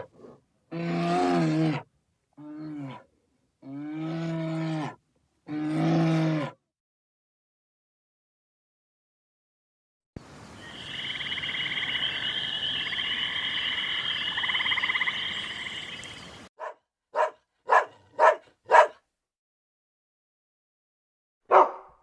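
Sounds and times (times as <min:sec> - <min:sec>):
frog chorus trilling: 0:10.4 - 0:16.5
short barks: 0:16.6 - 0:19.0, 0:21.5 - 0:22.0.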